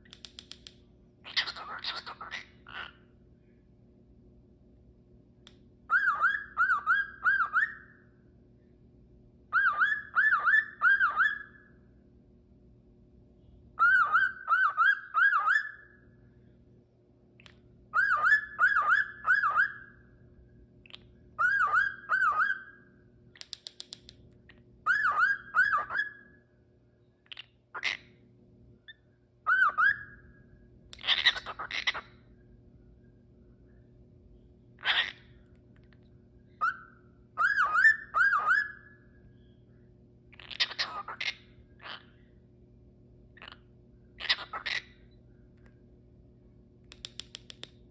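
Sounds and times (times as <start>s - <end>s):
cockatiel clicking: 0.0s - 0.8s, 23.4s - 24.2s, 46.9s - 47.8s
cockatiel whistling: 5.9s - 7.9s, 9.5s - 11.6s, 13.8s - 15.9s, 18.0s - 20.0s, 21.4s - 22.8s, 24.9s - 26.2s, 29.5s - 30.2s, 36.6s - 38.9s.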